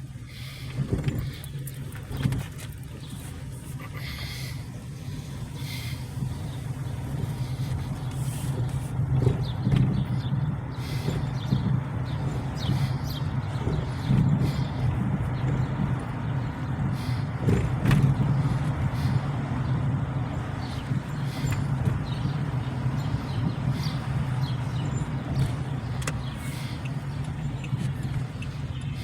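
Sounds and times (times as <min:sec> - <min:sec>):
car engine and tyre hum: 0:00.0 - 0:29.0
light clicks and knocks: 0:17.4 - 0:19.0, 0:25.0 - 0:29.0.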